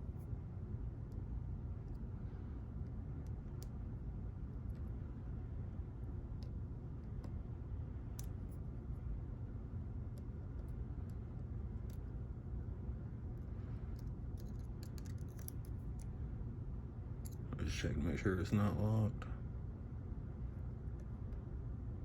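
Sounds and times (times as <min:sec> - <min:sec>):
low background hum: 0:00.0 - 0:22.0
lock picks clicking on pins: 0:13.9 - 0:16.0.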